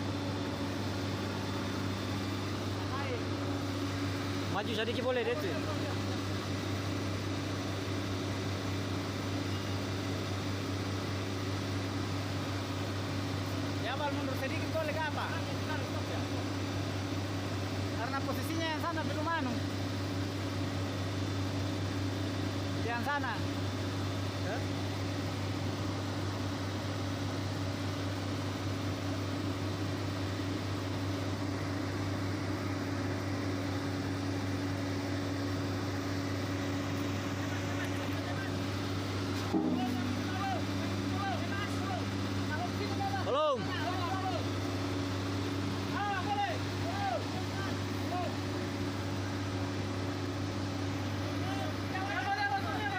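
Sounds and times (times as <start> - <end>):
diesel engine droning: 30.0 - 49.5.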